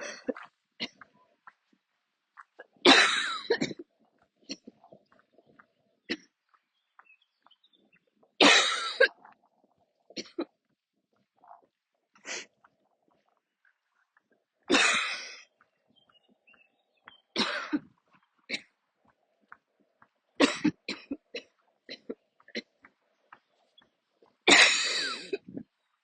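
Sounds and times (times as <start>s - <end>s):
woman coughing: 2.9s - 3.8s, 8.4s - 9.2s, 14.7s - 15.3s, 17.4s - 17.9s, 24.5s - 25.6s.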